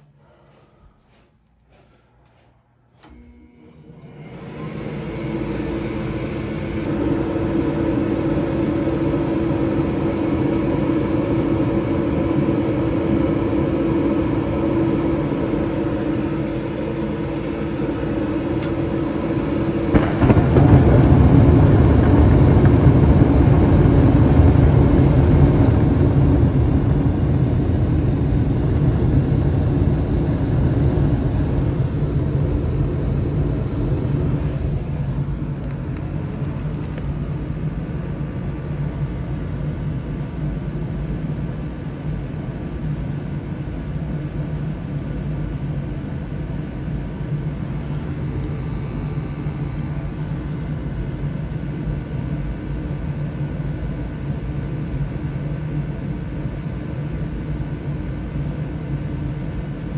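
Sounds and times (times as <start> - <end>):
gas burners rumbling: 0.0 - 55.3
draft inducer motor humming: 3.0 - 38.2.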